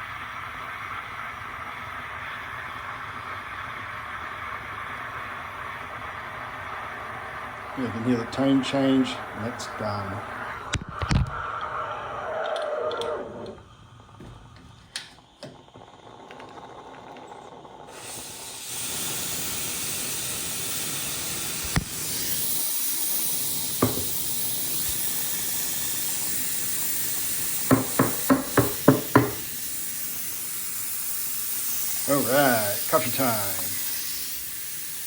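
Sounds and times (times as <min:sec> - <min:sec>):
steam hissing from espresso maker: 0:00.0 - 0:35.0
quick knocks: 0:27.7 - 0:29.4.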